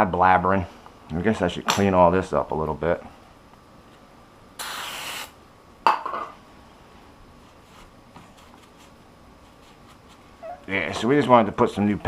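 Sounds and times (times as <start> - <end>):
short spray hiss: 4.6 - 5.4.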